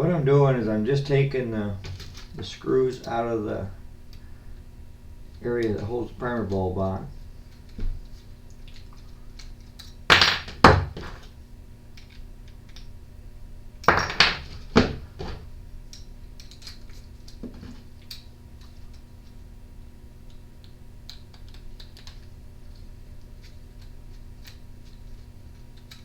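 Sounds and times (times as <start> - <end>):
tools knocking and clattering: 10.1 - 11.3, 13.8 - 15.5.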